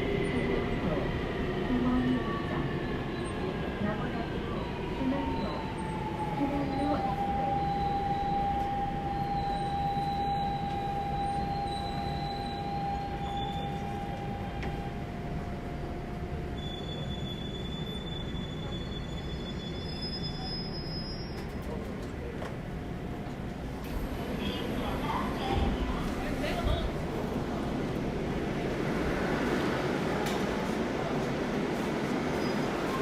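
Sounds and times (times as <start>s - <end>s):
thin train whine: 0.0s - 33.0s
train wheels rumbling on track: 21.2s - 33.0s.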